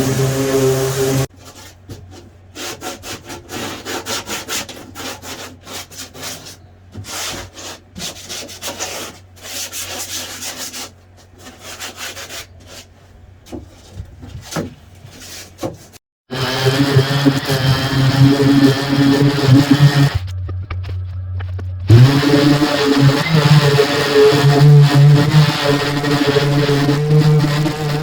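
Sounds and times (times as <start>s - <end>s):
hand sanding wood with sandpaper: 0.0s - 13.0s.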